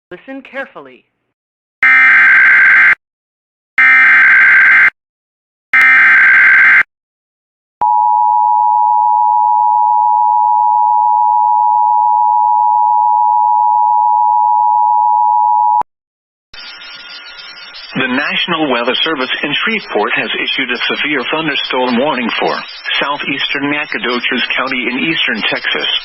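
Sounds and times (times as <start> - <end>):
screechy data bursts: 16.6 - 18.1.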